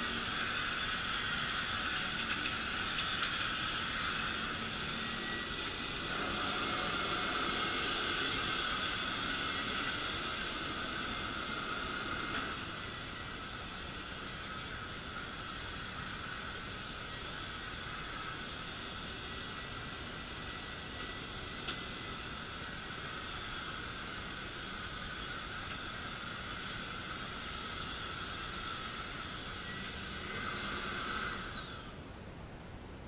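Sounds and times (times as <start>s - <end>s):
motor spinning down: 0.0s - 32.0s
vacuum cleaner motor whine: 0.0s - 32.3s.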